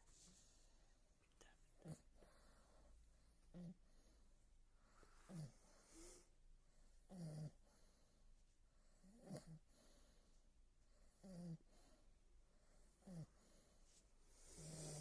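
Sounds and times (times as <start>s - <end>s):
dog snoring: 5.2s - 6.3s, 7.0s - 7.9s, 8.9s - 10.0s, 11.1s - 12.0s, 13.0s - 13.5s, 14.4s - 15.0s.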